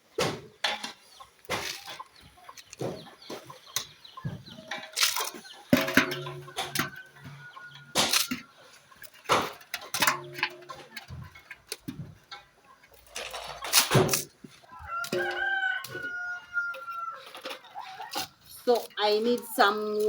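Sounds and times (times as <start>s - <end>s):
knocks and rustles: 0.1s - 16.1s
chicken clucking: 0.1s - 20.0s
rooster crowing: 6.3s - 8.1s, 14.7s - 18.1s.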